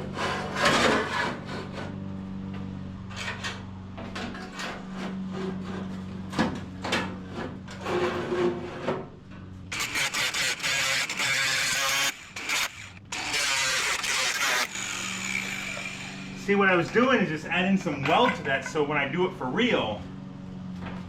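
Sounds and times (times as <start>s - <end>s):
steady low hum: 0.0s - 21.0s
tools clattering and scraping: 0.3s - 9.5s, 17.8s - 19.0s.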